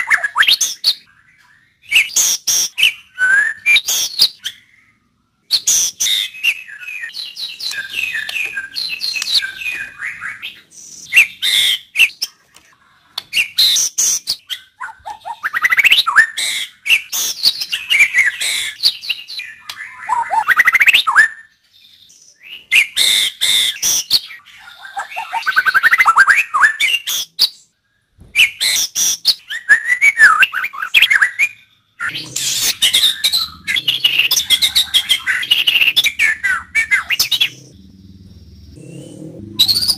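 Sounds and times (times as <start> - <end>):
bird singing whistles and clicks: 5.5 - 21.4.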